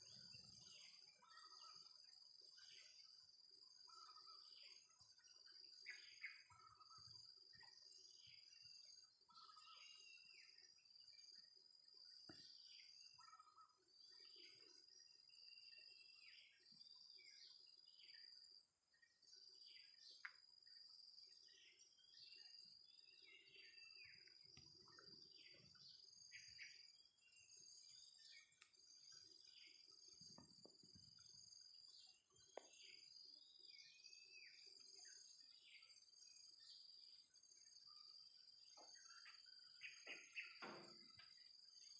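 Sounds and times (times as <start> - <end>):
bird whistling song: 38.8 - 41.5.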